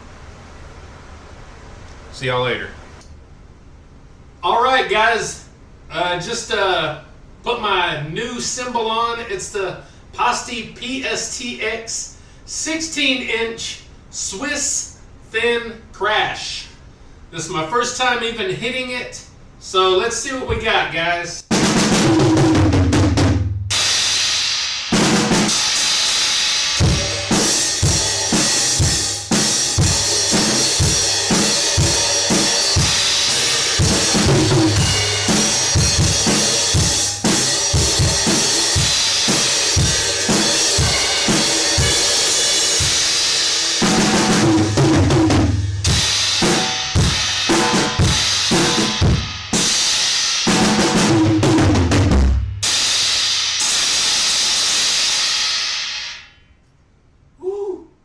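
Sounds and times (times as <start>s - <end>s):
snare drum strokes: 21.5s - 56.3s
crash cymbal ringing: 23.7s - 44.8s, 45.4s - 50.5s, 52.6s - 56.5s.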